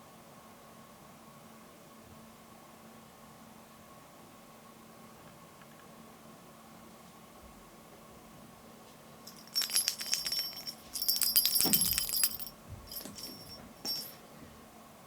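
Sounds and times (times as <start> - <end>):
metallic jingling: 9.3 - 14.2.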